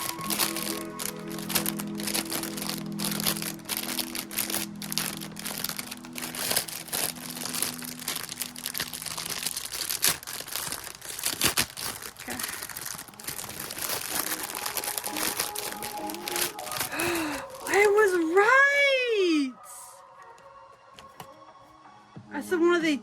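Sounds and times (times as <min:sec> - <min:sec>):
packaging crinkling and tearing: 0:00.0 - 0:18.7
soft background music: 0:00.0 - 0:23.0.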